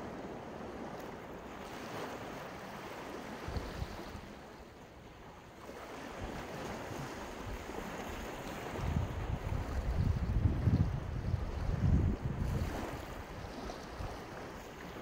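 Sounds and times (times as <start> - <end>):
sea waves breaking on beach: 0.0 - 15.0
wind buffeting microphone: 6.2 - 15.0.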